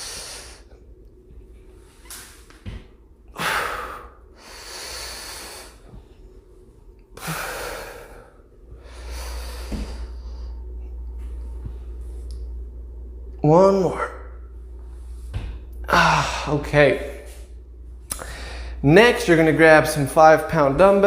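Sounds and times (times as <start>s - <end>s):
person breathing hard: 3.3s - 6.1s, 7.2s - 10.7s, 18.1s - 18.8s.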